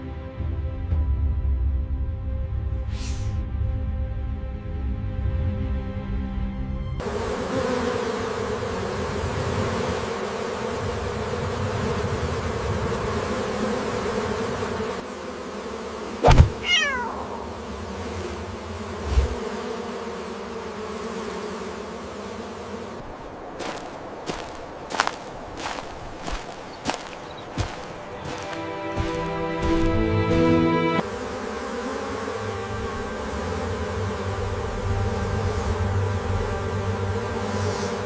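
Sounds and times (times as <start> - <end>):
bees buzzing: 7.0 - 38.0
dull thump: 16.2 - 16.6
cat meowing: 16.5 - 17.4.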